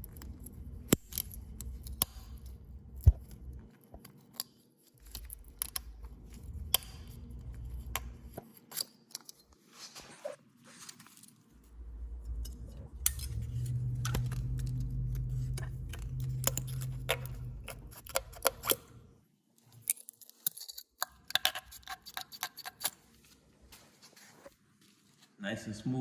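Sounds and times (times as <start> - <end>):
low hum: 0.0 - 3.7, 5.0 - 8.4, 11.6 - 19.2
metallic tool clicks and scraping: 0.0 - 9.6, 11.6 - 19.0, 19.7 - 23.0.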